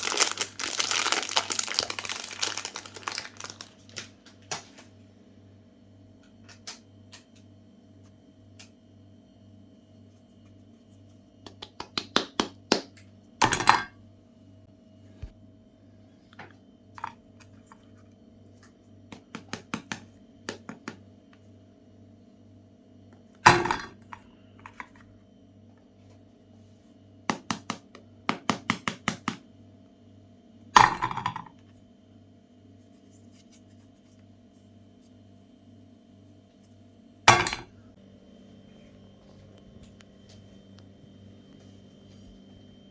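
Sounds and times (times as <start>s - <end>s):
faint steady hum: 12.9s - 28.3s, 29.4s - 42.9s.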